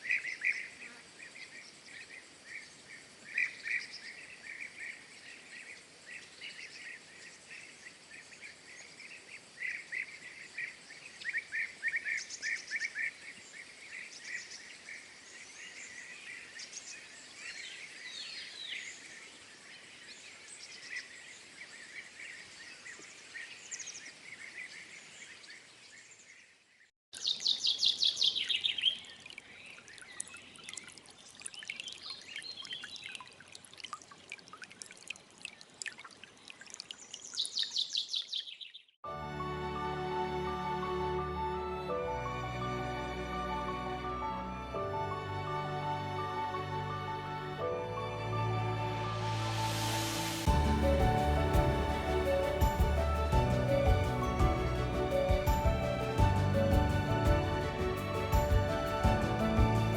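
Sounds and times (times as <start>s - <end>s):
small birds chirping: 0.0s - 39.0s.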